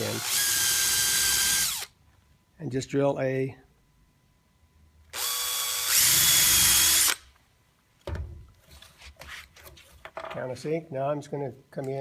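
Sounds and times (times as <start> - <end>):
power drill drilling into wood: 0.0 - 1.9, 5.2 - 7.2.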